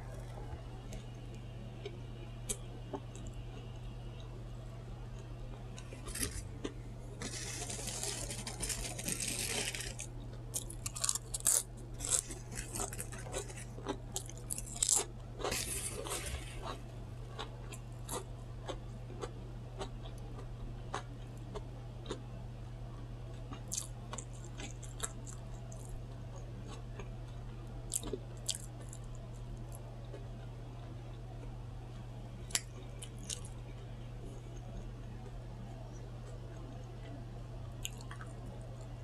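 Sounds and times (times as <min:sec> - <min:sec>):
chewing and crunching food: 0:00.0 - 0:39.0
steady low hum: 0:00.0 - 0:39.0
rustling: 0:07.2 - 0:13.8.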